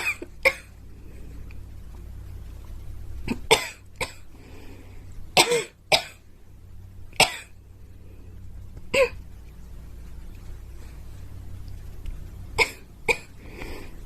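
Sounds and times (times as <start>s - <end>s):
girl coughing: 5.4s - 6.2s, 8.9s - 9.2s, 12.6s - 13.3s.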